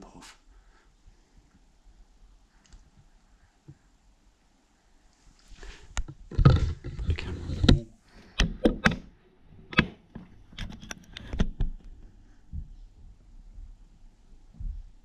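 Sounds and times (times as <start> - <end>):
thuds through the ceiling: 14.5 - 15.0.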